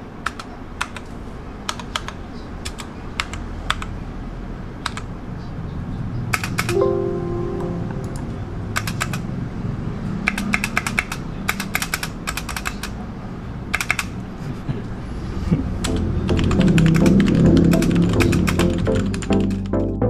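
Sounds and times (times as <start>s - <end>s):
mechanical keyboard typing: 0.2s - 4.0s, 4.8s - 5.1s, 6.3s - 6.8s, 8.8s - 9.2s, 10.3s - 13.0s, 13.8s - 14.2s, 15.8s - 19.7s
background music: 6.7s - 9.2s, 15.8s - 20.0s.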